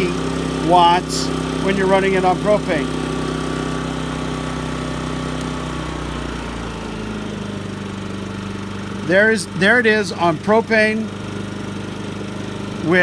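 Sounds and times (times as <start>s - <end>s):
generator engine running: 0.0s - 13.0s.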